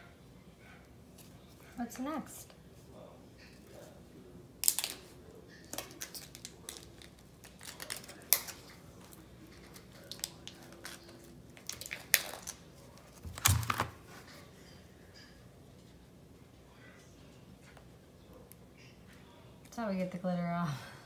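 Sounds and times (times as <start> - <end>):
clicks taps and crinkling: 4.6 - 14.0.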